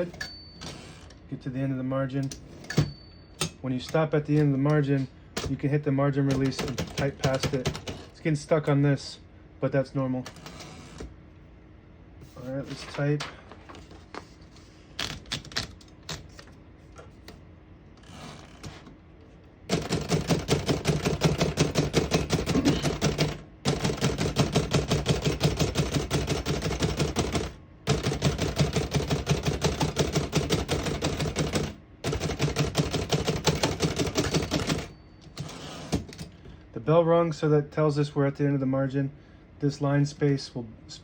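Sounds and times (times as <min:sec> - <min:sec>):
typewriter keystrokes: 0:06.3 - 0:08.0, 0:19.7 - 0:36.3.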